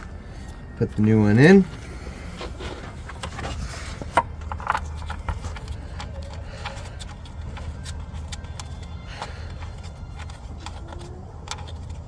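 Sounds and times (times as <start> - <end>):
steady low rumble: 0.0 - 8.7.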